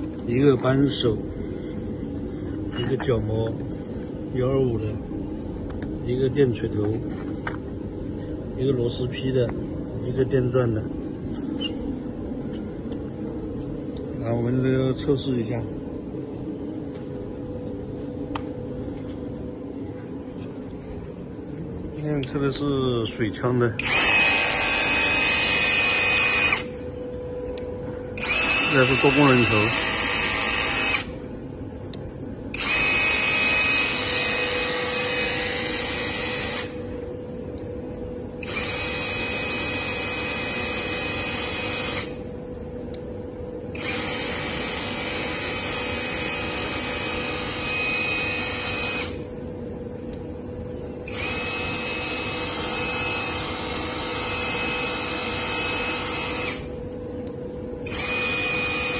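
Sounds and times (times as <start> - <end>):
electric motor high whine: 22.1 - 31.4, 32.5 - 37.7, 38.3 - 42.4, 43.7 - 49.4, 51.0 - 58.9.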